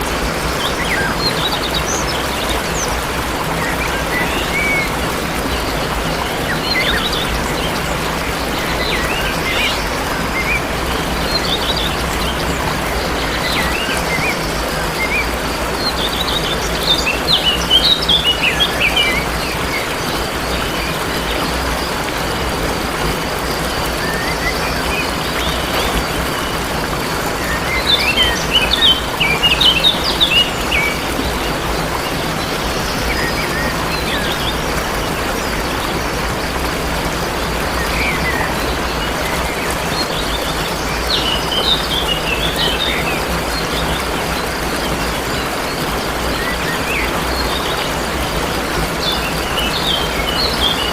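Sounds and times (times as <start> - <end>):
songbirds chirping: 0.0 - 50.9
waterfall rushing: 0.0 - 50.9.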